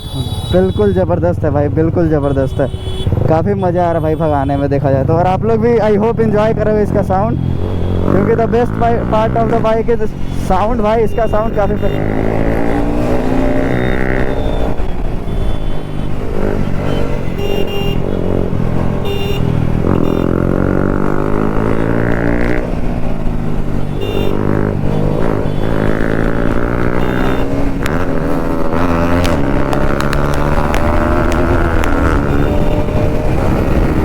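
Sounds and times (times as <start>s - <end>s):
motorcycle engine accelerating: 11.8s - 34.0s.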